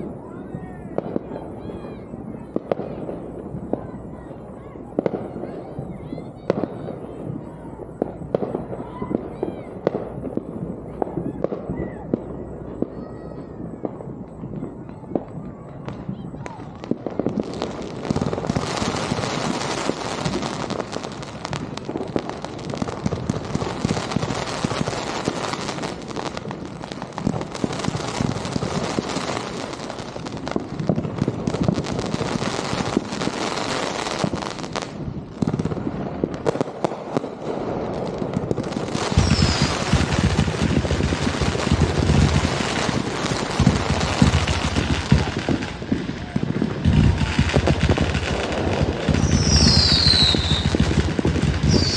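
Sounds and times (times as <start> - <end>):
fireworks crackling and popping: 0.0 - 51.9
deep firework booms: 34.2 - 51.9.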